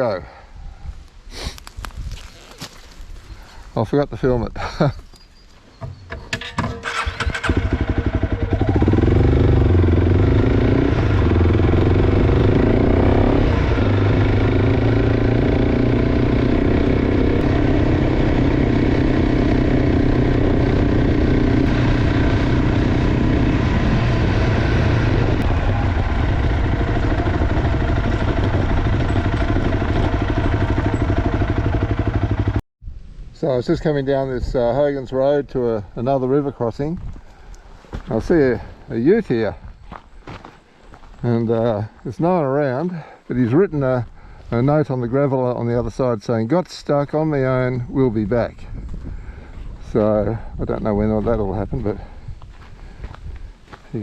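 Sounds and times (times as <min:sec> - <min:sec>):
motorcycle engine running: 0:05.8 - 0:32.6.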